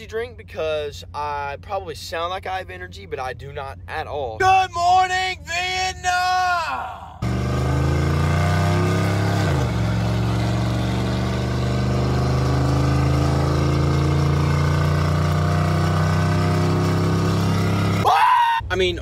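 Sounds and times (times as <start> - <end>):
pickup truck engine running: 7.2 - 18.0.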